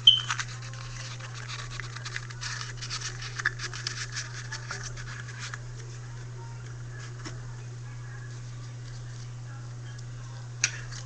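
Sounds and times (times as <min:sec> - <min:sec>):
paper crinkling and rustling: 0:00.2 - 0:06.2.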